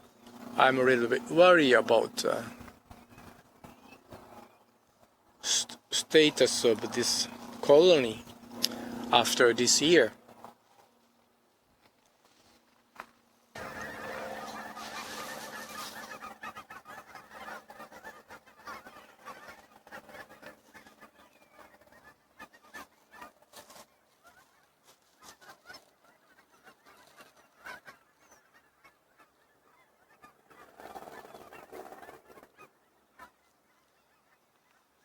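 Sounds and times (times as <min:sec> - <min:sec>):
flock of birds calling: 0:00.0 - 0:10.5, 0:13.6 - 0:35.0.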